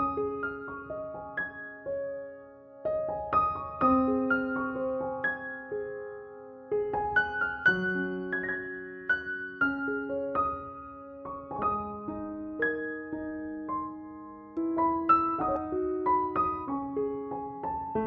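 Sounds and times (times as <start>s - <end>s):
soft slow piano music: 0.0s - 18.0s.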